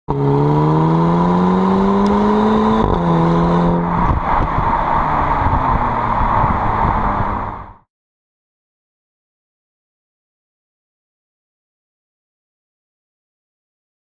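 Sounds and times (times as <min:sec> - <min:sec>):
car engine accelerating: 0:00.1 - 0:07.9
loud rushing noise: 0:00.4 - 0:07.8.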